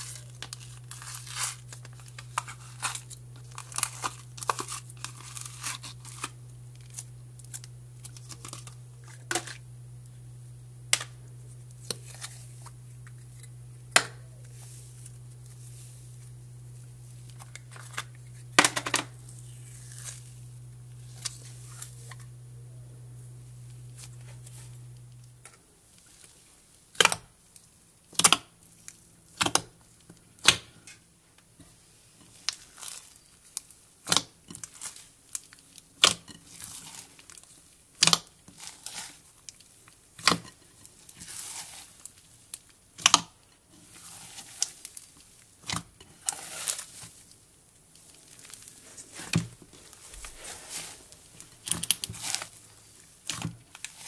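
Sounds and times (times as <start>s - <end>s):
slime crackling and tearing: 0.0s - 8.8s, 32.3s - 43.2s.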